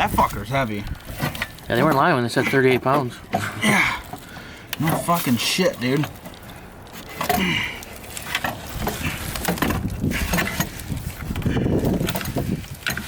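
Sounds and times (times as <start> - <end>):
metal clunks and knocks: 8.2 - 13.0.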